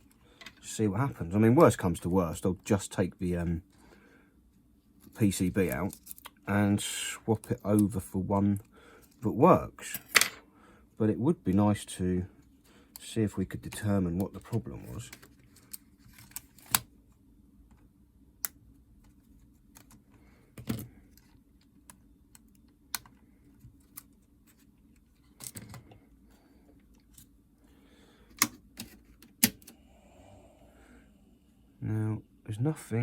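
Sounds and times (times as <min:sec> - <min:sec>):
faint steady hum: 0:00.0 - 0:33.0
small tools and plastic parts clicking: 0:05.6 - 0:06.4.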